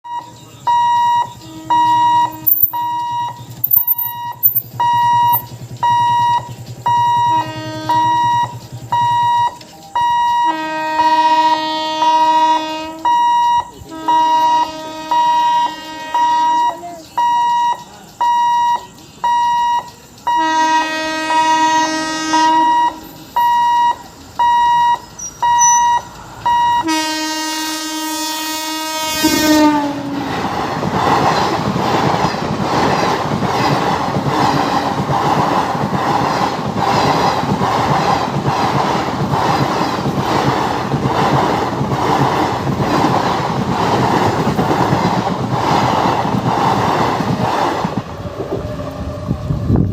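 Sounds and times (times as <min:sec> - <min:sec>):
level-crossing warning buzzer beeping: 0:00.1 - 0:10.7, 0:12.2 - 0:27.0
train horn blasts: 0:01.2 - 0:02.4, 0:07.1 - 0:08.6, 0:10.2 - 0:16.8, 0:20.3 - 0:23.1, 0:26.6 - 0:30.3
train wheels clacking over rail joints: 0:30.3 - 0:48.7.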